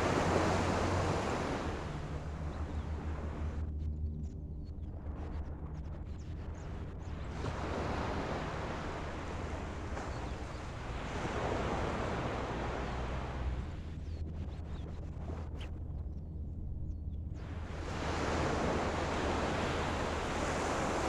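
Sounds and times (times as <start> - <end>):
ocean surf washing in: 0.0 - 2.2
wind rumble on microphone: 0.0 - 21.0.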